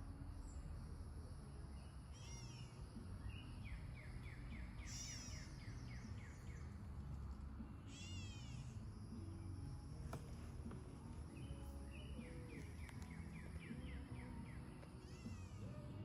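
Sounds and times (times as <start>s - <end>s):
birds chirping: 1.6s - 16.0s.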